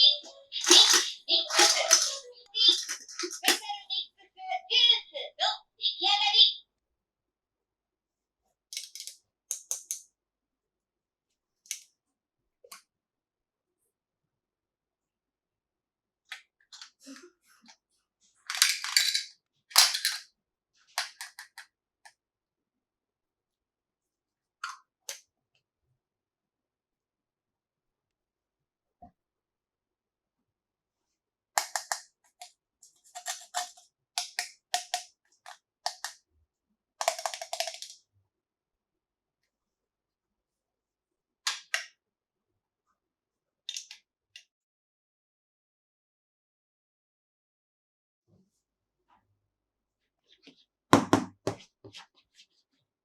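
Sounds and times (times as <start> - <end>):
plastic toy pieces clicking: 0.6 - 3.7, 8.7 - 10.0, 18.5 - 20.2, 21.0 - 21.7, 31.6 - 36.2, 37.0 - 38.0.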